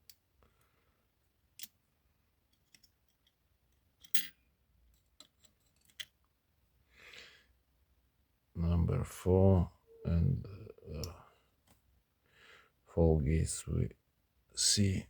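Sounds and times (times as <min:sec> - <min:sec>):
small metallic clicks: 0:01.5 - 0:01.8, 0:02.5 - 0:06.2.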